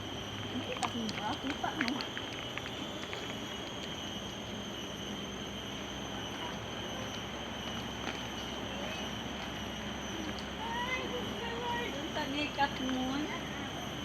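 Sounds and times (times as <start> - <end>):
high-pitched whine: 0.0 - 14.0
outdoor background noise: 0.0 - 14.0.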